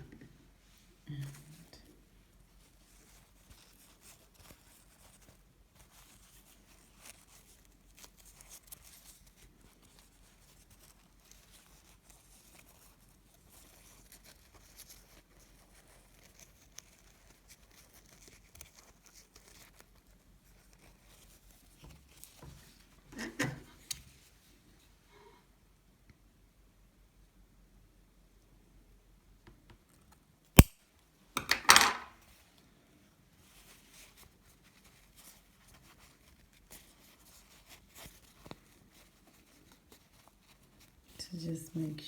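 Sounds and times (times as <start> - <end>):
fabric and ribbon rustling: 0.6 - 25.0, 33.3 - 42.0.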